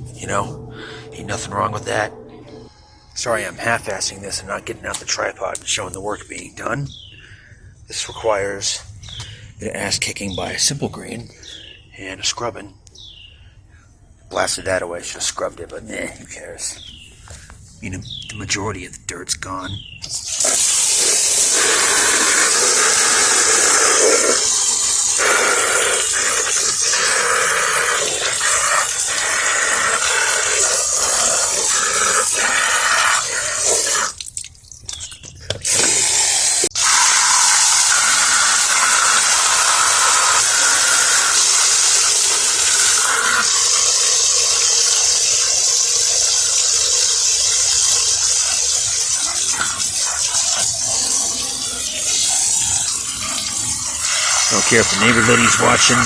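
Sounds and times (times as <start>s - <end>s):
garden hose spraying water: 20.0s - 34.7s, 35.6s - 56.0s.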